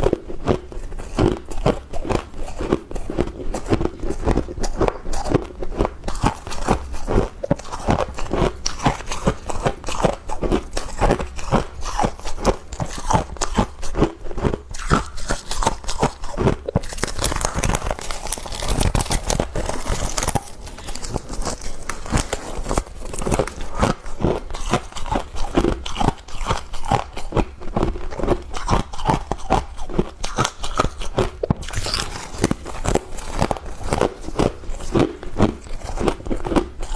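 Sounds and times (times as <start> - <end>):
crunching and chewing frost: 0.0 - 36.9.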